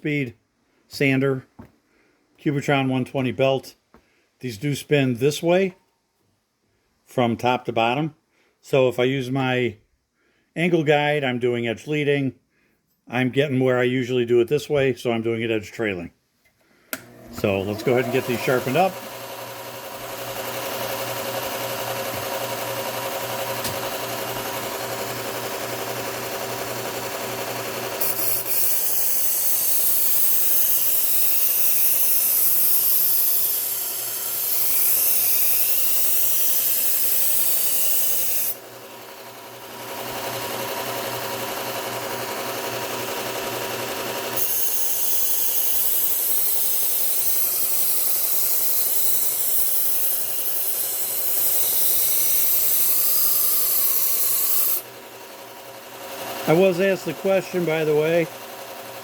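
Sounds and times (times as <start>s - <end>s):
belt sander motor hum: 16.9s - 59.0s
knife grinding on belt sander: 17.0s - 58.8s.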